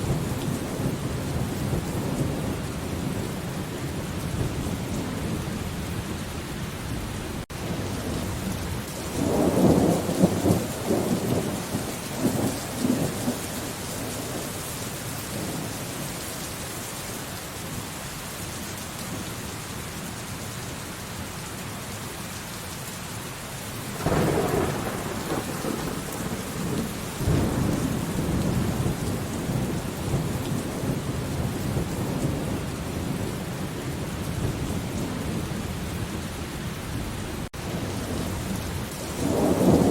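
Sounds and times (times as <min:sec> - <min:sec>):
heavy rain: 0:00.0 - 0:39.9
rolling thunder: 0:07.7 - 0:14.4, 0:23.9 - 0:36.3, 0:36.9 - 0:39.9.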